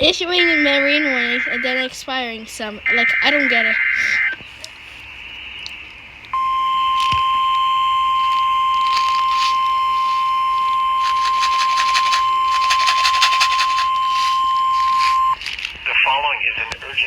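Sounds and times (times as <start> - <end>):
crackling radio static: 2.9 - 4.4, 6.4 - 17.0
high-pitched warning alarm tone: 6.4 - 15.4.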